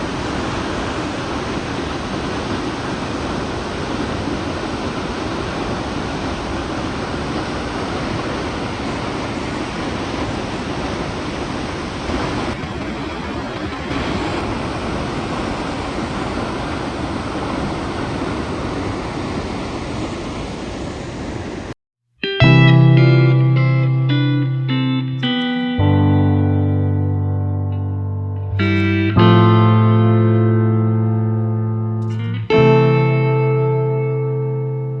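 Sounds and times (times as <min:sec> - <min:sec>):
waterfall rushing: 0:00.0 - 0:21.7
guitar music: 0:22.2 - 0:35.0.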